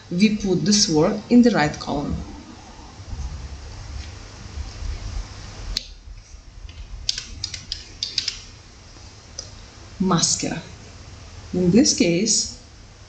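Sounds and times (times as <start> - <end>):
low steady rumble: 0.0 - 13.0
sharp clicks and taps: 6.7 - 8.5.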